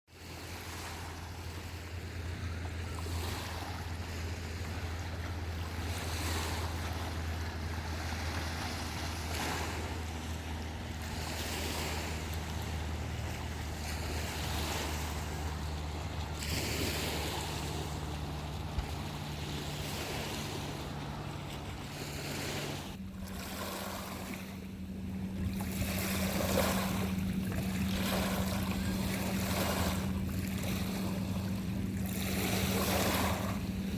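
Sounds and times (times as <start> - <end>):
steady low hum: 0.2 - 33.9
small waves washing onto rocks: 3.0 - 24.6.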